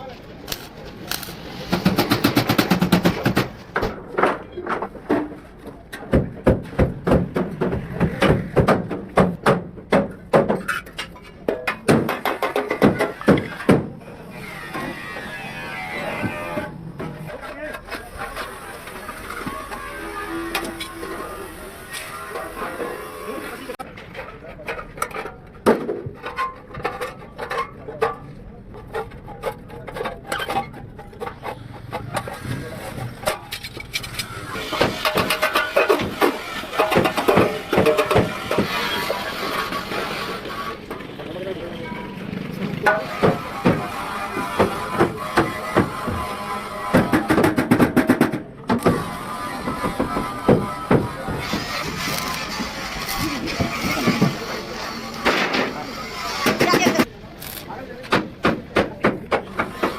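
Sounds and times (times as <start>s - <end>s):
knocks and taps in workshop: 5.9s - 10.6s.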